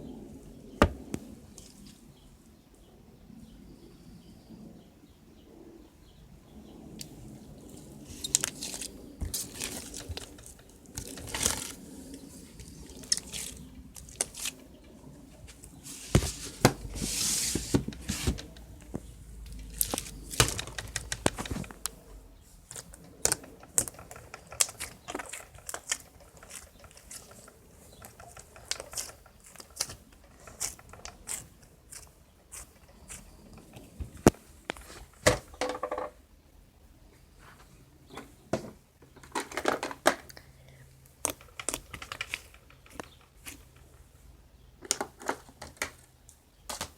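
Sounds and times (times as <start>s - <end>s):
hands squishing sticky slime: 22.7s - 33.9s.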